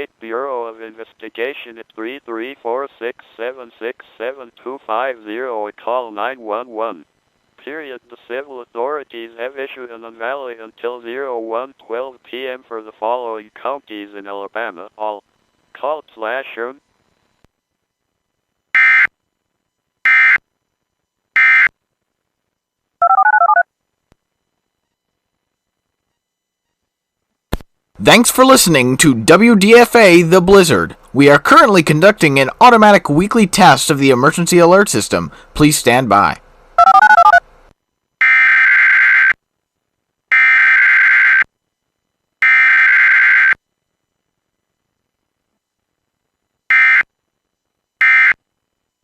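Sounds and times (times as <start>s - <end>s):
touch-tone beeps: 23.0s - 23.6s, 36.8s - 37.4s
digital data tone bursts: 36.8s - 37.4s.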